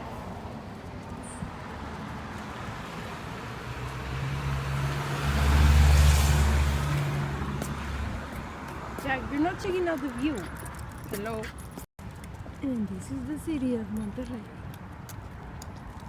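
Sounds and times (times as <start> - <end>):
vehicle driving past: 0.0 - 9.4.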